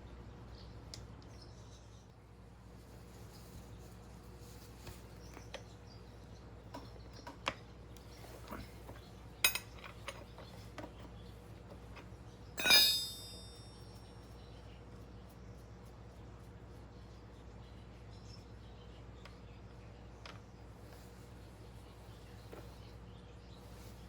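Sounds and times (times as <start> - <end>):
metallic clink ringing: 9.4 - 10.2, 12.6 - 14.1.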